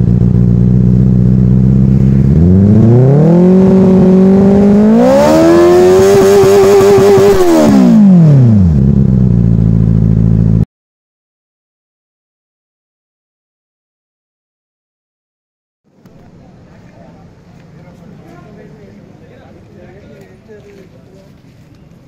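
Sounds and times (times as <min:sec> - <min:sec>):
motorcycle engine idling and revving: 0:00.0 - 0:10.6.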